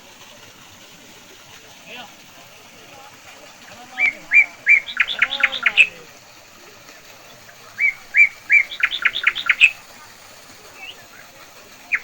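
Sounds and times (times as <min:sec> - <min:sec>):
faint voice: 0:01.8 - 0:12.0
songbird singing trill: 0:03.8 - 0:06.1, 0:07.6 - 0:09.8, 0:10.8 - 0:11.2.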